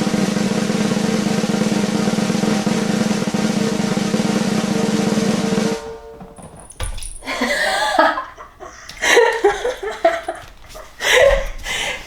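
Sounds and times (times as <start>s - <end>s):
short thump: 6.2s - 7.2s
woman laughing: 7.2s - 12.0s.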